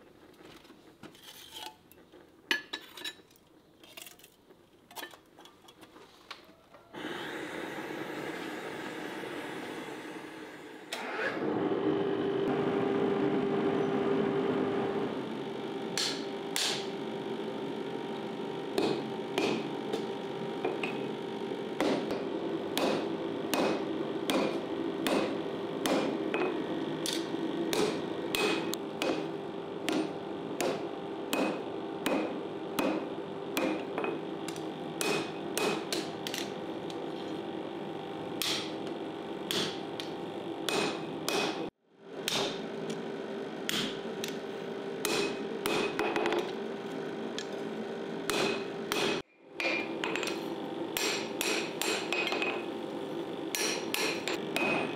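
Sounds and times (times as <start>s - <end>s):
steady hum: 11.9s - 54.9s.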